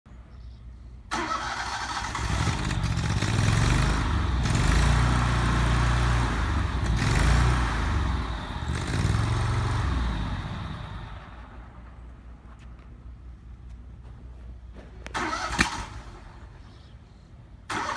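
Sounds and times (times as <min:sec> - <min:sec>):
mower engine starting and running: 0:01.1 - 0:11.6, 0:15.2 - 0:16.2, 0:17.7 - 0:17.9.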